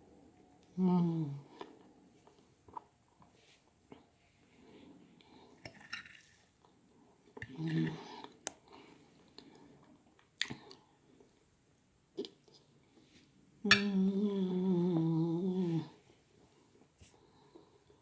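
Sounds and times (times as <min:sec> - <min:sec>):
person humming mmm: 0:00.7 - 0:01.7, 0:13.7 - 0:16.0.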